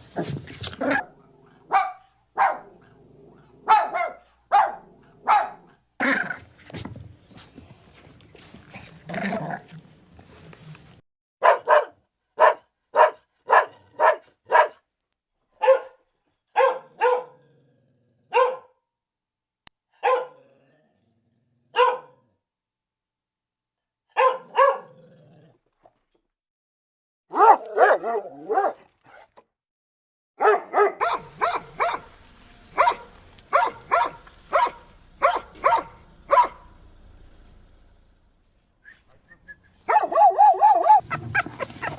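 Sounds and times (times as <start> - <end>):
dog barking: 0.2 - 5.8, 11.4 - 14.9, 15.6 - 17.4, 18.3 - 18.8, 20.0 - 20.5, 21.7 - 22.2, 24.1 - 25.0, 27.3 - 29.2, 30.4 - 36.7, 39.8 - 41.9.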